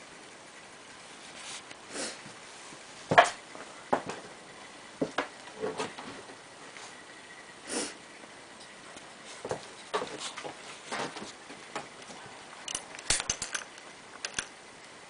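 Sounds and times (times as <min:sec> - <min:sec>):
tools and parts knocking: 0:12.7 - 0:14.5.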